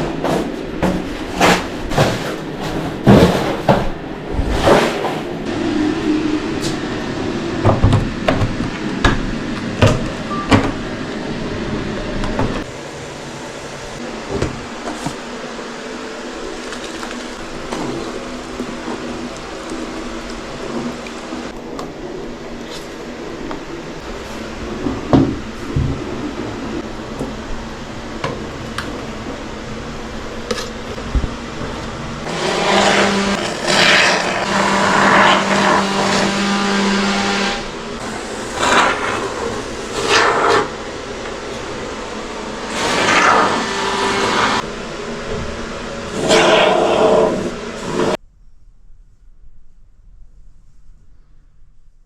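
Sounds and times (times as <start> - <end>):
mechanical hum: 0.0 - 52.0
motor running: 32.2 - 44.7.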